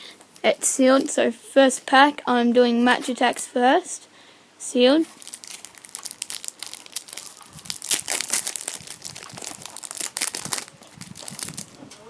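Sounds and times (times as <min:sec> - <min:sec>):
foil wrapper crinkling and tearing: 0:05.1 - 0:11.8.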